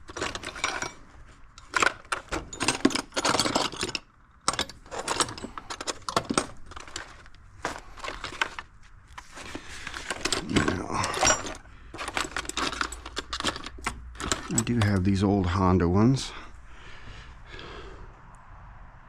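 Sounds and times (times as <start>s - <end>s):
steel blades clinking and jangling: 10.0s - 15.2s.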